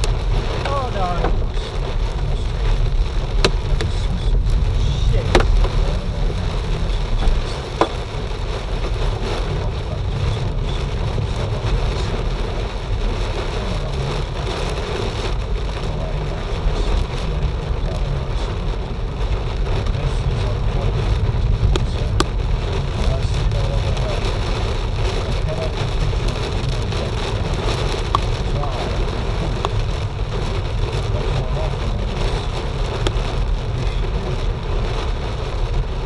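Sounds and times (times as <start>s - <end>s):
sharp hail hits: 0.0s - 15.7s
hail and rain pelting down: 0.0s - 36.0s.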